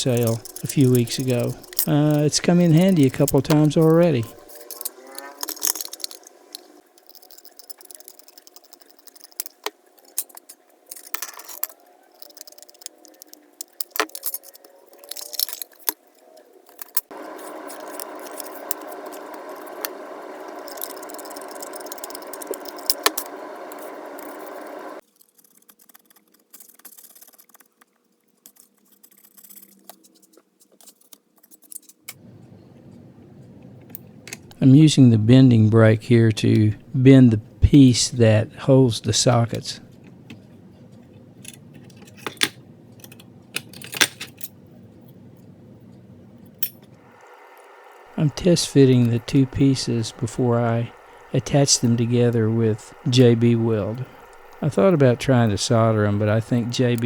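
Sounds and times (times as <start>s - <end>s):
steady noise: 0.0s - 9.8s, 17.1s - 25.0s, 45.5s - 57.0s
sheet metal clicks and rattles: 0.0s - 17.1s.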